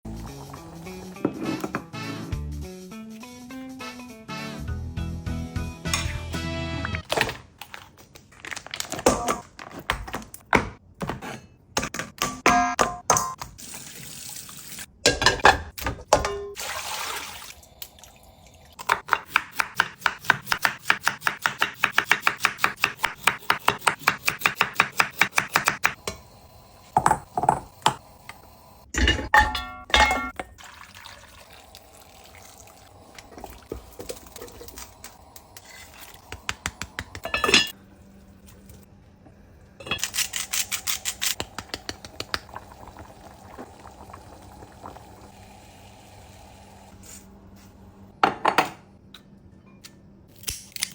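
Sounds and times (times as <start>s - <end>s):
dishes and pans clattering: 29.0s - 30.5s, 37.1s - 37.8s.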